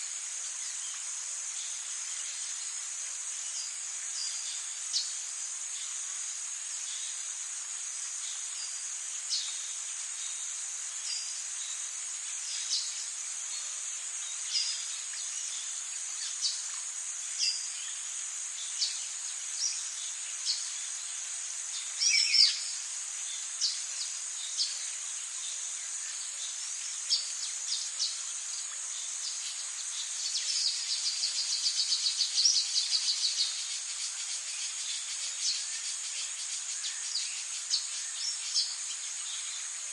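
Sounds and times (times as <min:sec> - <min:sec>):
high-pitched insect drone: 0:10.2 - 0:39.9.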